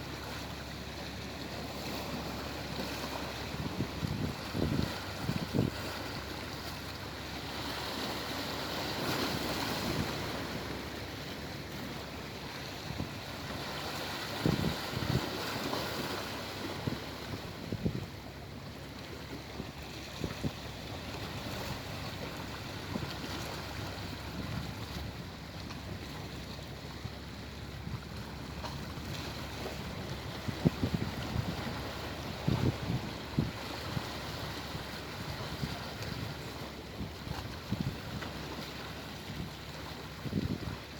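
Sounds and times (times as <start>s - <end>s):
sea waves surf: 0.0s - 40.9s
wind thuds on microphone: 14.4s - 15.3s, 30.4s - 33.6s.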